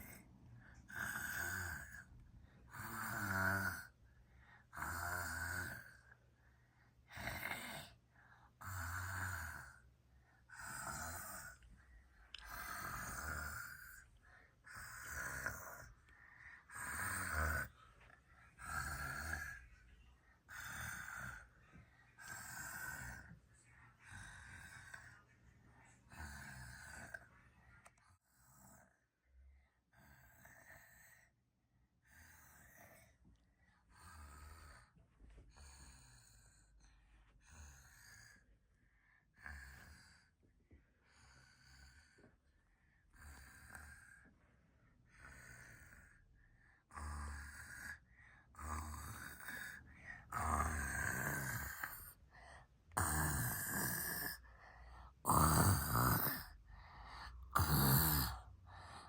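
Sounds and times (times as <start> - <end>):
person snoring: 0.8 - 2.1, 2.7 - 4.0, 4.6 - 6.1, 7.0 - 8.0, 8.6 - 9.8, 10.5 - 11.6, 12.3 - 19.7, 20.4 - 21.5, 22.2 - 23.3, 24.0 - 25.2, 26.1 - 27.3, 46.9 - 59.0.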